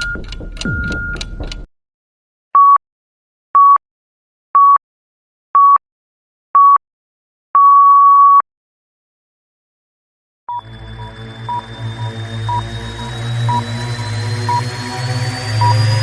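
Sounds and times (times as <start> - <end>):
short electronic beeps: 0.0 - 1.6, 10.5 - 16.0
ticking sound: 0.0 - 1.7, 10.5 - 16.0.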